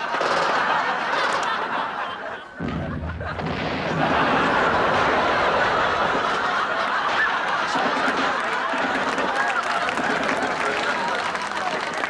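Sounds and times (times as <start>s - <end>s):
studio audience laughing: 0.0s - 12.0s
low thud: 2.6s - 6.0s.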